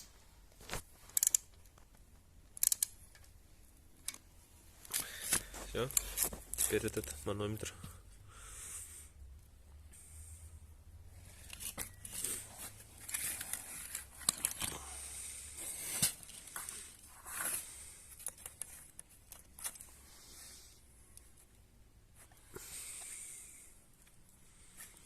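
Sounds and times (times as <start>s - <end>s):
small parts clicking and scraping: 0.0s - 7.4s, 11.3s - 20.1s.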